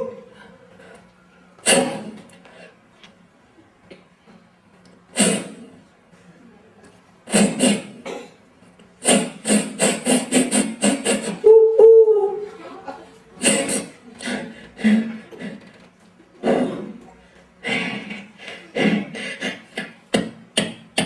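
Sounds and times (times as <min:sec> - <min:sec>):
man beatboxing: 0:01.6 - 0:02.4, 0:05.1 - 0:05.8, 0:07.3 - 0:08.2, 0:08.9 - 0:11.6, 0:13.4 - 0:15.8, 0:16.4 - 0:21.0.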